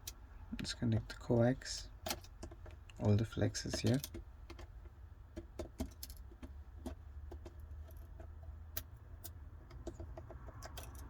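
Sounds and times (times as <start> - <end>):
tool clicking on phone internals: 2.0 - 7.6, 8.7 - 11.0.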